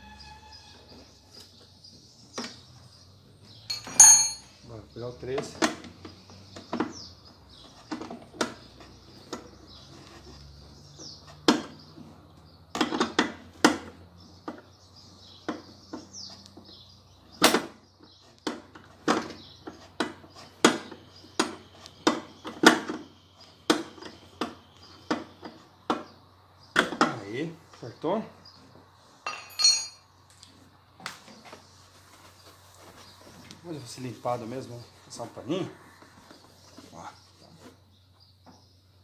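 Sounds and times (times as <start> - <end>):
wrench clinking on metal: 3.7 - 4.5, 29.2 - 30.0.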